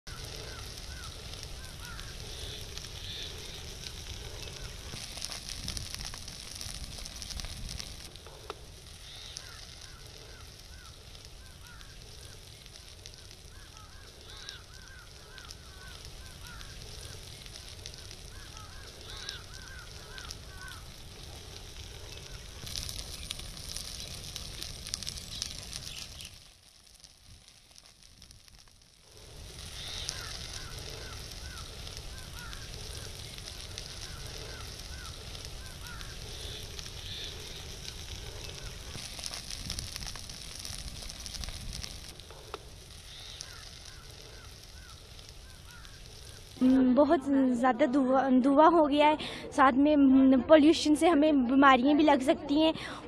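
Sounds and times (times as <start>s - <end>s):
fire burning with crackling: 0.0s - 53.0s
short chirping calls: 21.7s - 26.5s, 29.6s - 38.9s.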